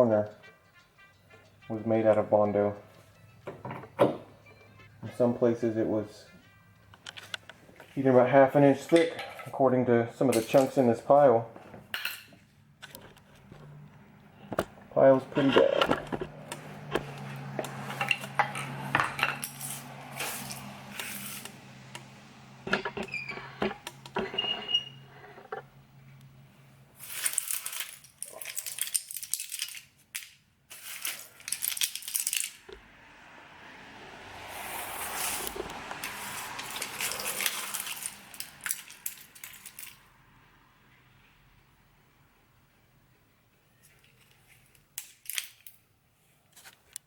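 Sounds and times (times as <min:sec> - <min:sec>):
hard chunks clinking together: 0:27.0 - 0:32.6, 0:36.1 - 0:40.0.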